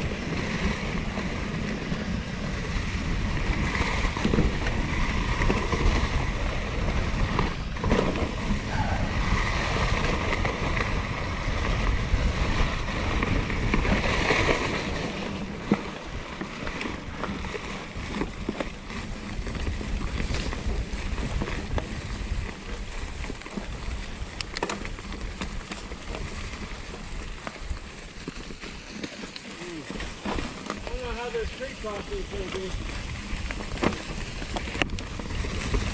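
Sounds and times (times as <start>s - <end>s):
bike clanks and ticks: 0.0s - 8.6s, 9.8s - 35.9s
wind rushing over microphone: 0.0s - 16.4s, 30.8s - 35.9s
bike tyre rumble: 0.0s - 35.9s.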